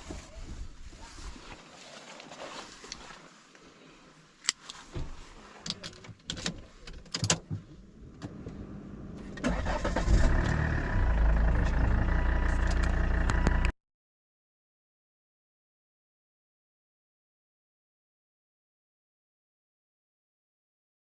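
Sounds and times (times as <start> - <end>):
car engine starting and idling: 7.4 - 13.7.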